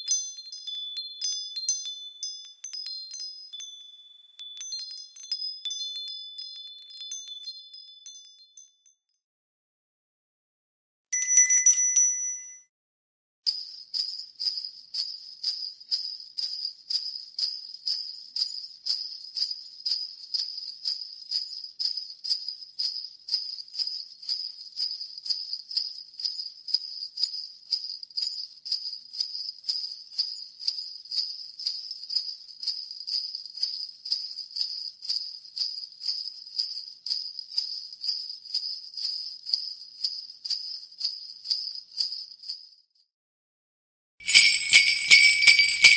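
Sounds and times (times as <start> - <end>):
sleigh bells jingling: 0.0 - 8.8, 11.2 - 12.6, 44.2 - 45.9
bright chime ringing: 11.2 - 12.6, 44.2 - 45.9.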